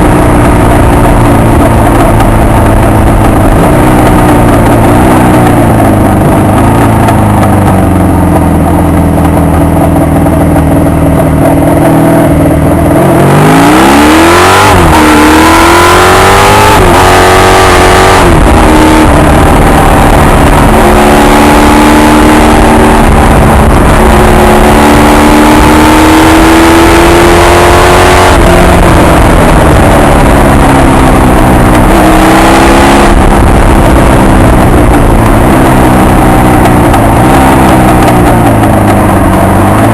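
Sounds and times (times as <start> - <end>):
gear changes: 0.0 - 39.9
motorcycle engine revving: 0.0 - 39.9
wind noise on microphone: 12.0 - 39.9.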